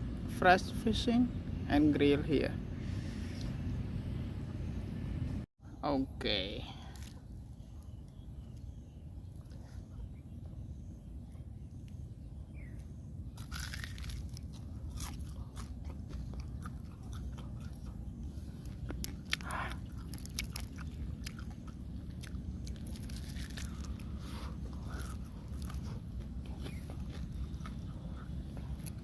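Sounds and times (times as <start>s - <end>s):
low background rumble: 0.0s - 29.0s
person chewing crunchy food: 12.7s - 29.0s.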